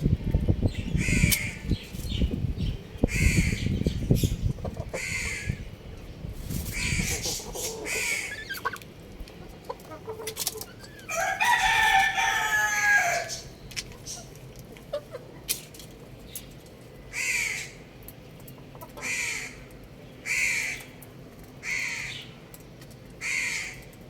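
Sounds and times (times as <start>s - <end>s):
rooster crowing: 11.0s - 13.5s.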